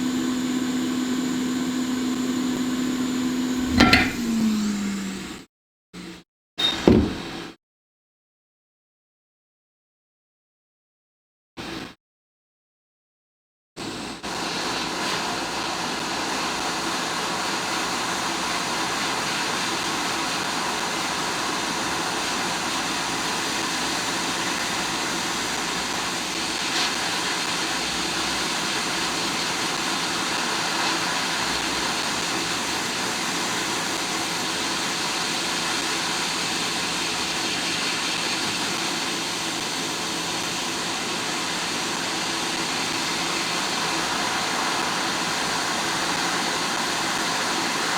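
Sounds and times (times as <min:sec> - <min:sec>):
hot air station blowing: 0:00.0 - 0:05.4.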